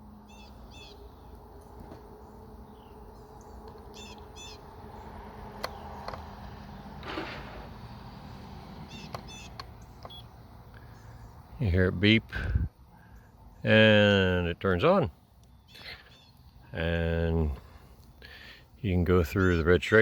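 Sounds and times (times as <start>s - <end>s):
bird chirping: 0.2s - 7.0s, 8.8s - 11.8s, 15.2s - 16.8s, 19.2s - 20.0s
sharp clicks: 5.6s - 6.2s.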